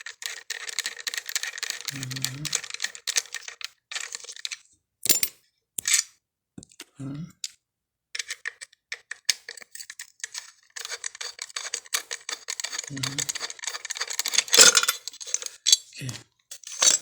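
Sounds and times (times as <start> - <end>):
metal tools clicking and scraping: 0.0 - 6.1, 8.2 - 17.0
small rapid clicks: 9.2 - 15.2.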